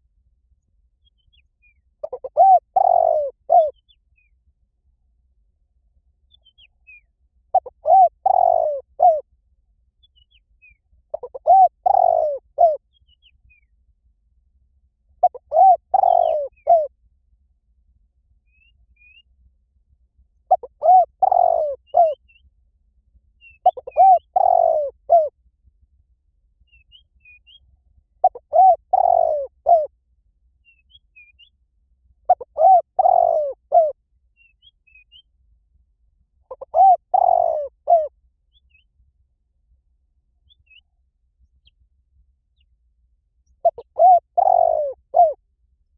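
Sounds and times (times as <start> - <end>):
small birds chirping: 1.0 - 4.4, 6.3 - 9.2, 10.0 - 13.8, 15.2 - 16.9, 20.5 - 22.4, 23.4 - 25.3, 28.2 - 29.9, 32.3 - 35.3, 36.5 - 38.9, 43.4 - 45.4
dove cooing: 2.0 - 3.8, 7.5 - 9.2, 11.1 - 12.8, 15.2 - 16.9, 20.5 - 22.2, 23.6 - 25.3, 28.2 - 29.9, 32.3 - 34.0, 36.5 - 38.1, 43.6 - 45.4.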